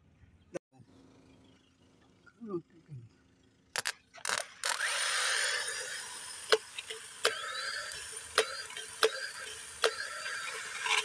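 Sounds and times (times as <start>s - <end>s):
hand tools clicking: 3.8s - 11.0s.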